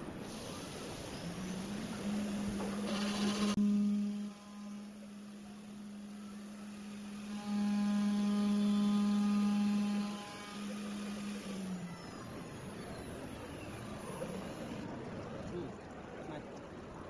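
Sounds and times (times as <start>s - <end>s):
machining centre electric hum: 0.0s - 17.0s.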